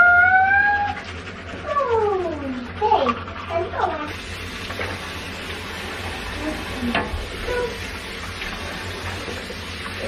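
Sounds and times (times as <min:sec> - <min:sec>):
shower water spray hissing: 0:04.1 - 0:10.0.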